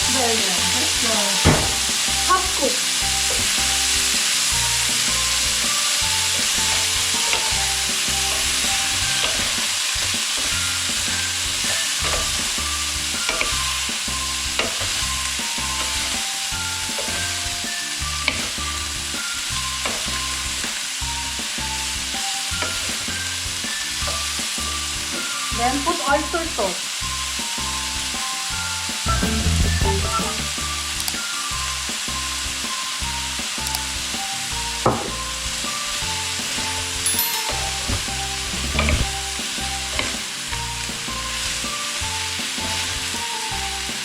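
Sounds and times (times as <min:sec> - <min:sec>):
background music: 0:00.0 - 0:44.0
broccoli sizzling in hot oil: 0:00.0 - 0:44.0.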